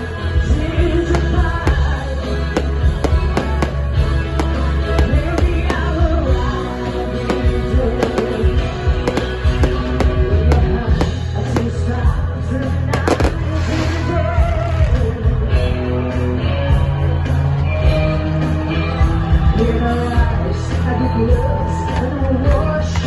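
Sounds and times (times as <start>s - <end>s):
pop music with singing: 0.0s - 23.0s
fireworks bursting: 1.1s - 11.9s, 12.9s - 14.2s.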